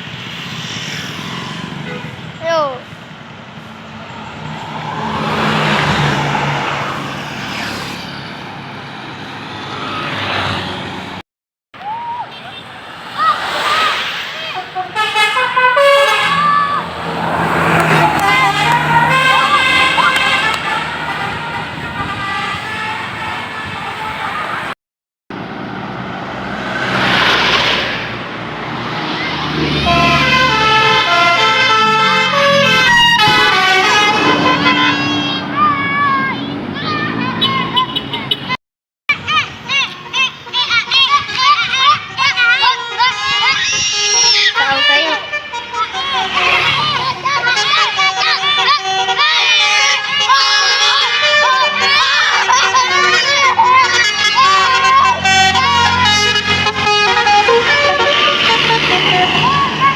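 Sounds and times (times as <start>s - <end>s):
large vehicle passing: 0.0s - 11.2s, 11.8s - 38.3s, 45.2s - 48.6s, 50.3s - 59.9s
bus musical horn playing tune: 14.6s - 24.7s, 29.7s - 38.6s, 40.0s - 59.9s.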